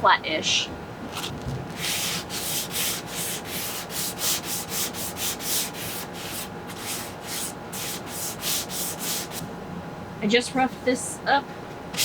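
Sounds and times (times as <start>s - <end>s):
sandpaper rubbing on wood: 1.8s - 9.4s.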